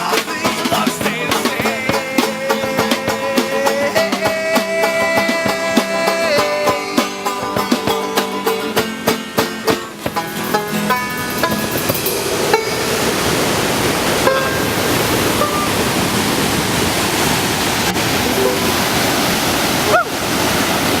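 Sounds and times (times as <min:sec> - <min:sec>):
plucked banjo notes: 0:00.0 - 0:16.5, 0:17.8 - 0:19.0
creek rushing: 0:00.0 - 0:21.0.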